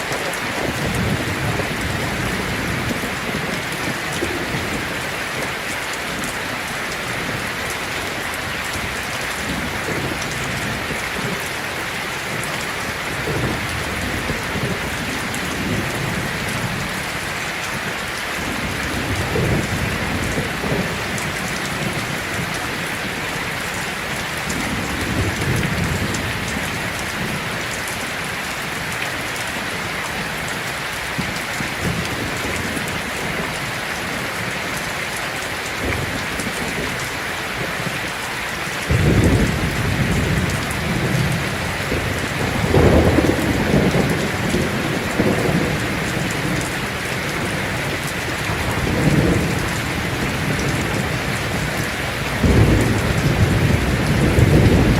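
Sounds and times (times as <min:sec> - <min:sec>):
thunder rumbling: 0:00.0 - 0:05.6, 0:38.8 - 0:54.9
heavy rain on a tin roof: 0:00.0 - 0:54.9.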